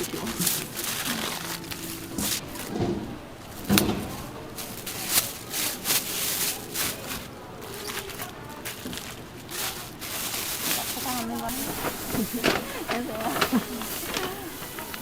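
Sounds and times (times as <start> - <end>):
stall background noise: 0.0 - 15.0
knocks and clatter of food prep: 2.1 - 4.8, 11.1 - 15.0.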